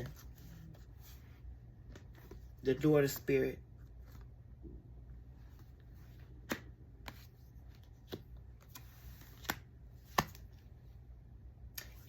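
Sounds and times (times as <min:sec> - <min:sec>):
low steady hum: 0:00.0 - 0:12.0
cards being shuffled: 0:05.6 - 0:10.6.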